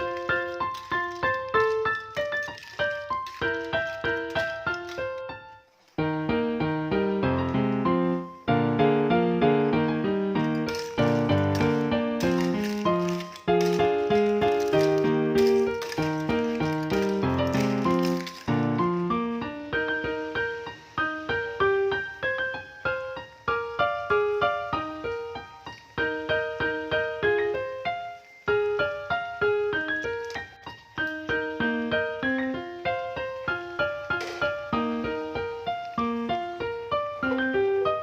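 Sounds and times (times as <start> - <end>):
bright piano notes: 0.0 - 38.0.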